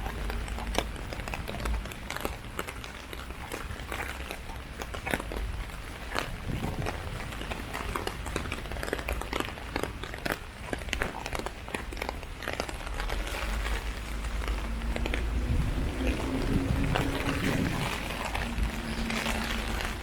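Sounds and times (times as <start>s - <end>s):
heavy rain on an umbrella: 0.0s - 20.0s.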